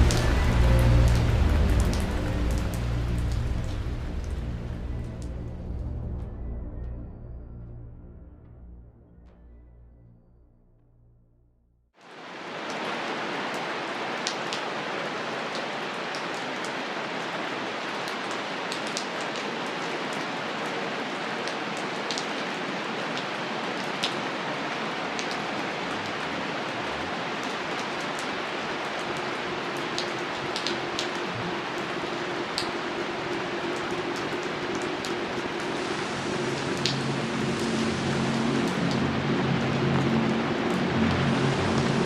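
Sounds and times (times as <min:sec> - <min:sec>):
steady rain hiss: 0:00.0 - 0:05.9, 0:12.0 - 0:42.0.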